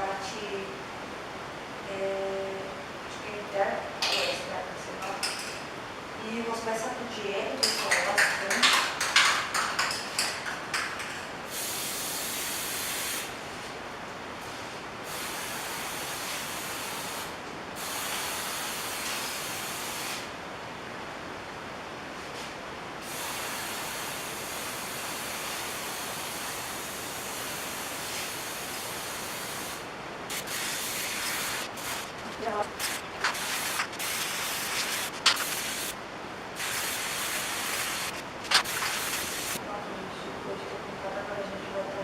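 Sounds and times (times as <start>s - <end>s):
spray-paint can hissing: 11.5s - 13.3s, 23.0s - 36.0s, 36.6s - 39.6s.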